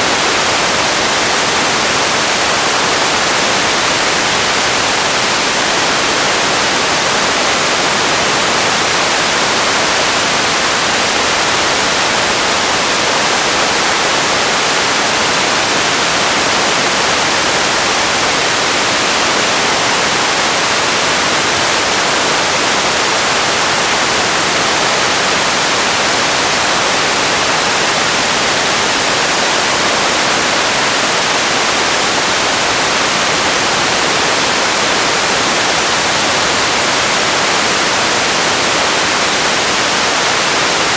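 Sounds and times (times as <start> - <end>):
steady hiss: 0.0 - 40.9.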